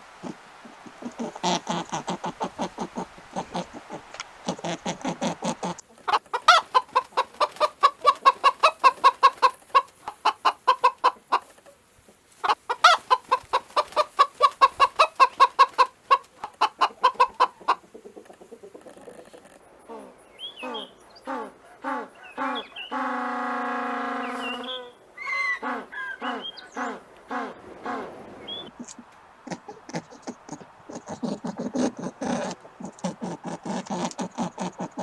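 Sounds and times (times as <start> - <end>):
low fast pulsing animal call: 0.0 - 5.8, 19.9 - 35.0
chickens clucking: 0.0 - 23.3, 24.2 - 35.0.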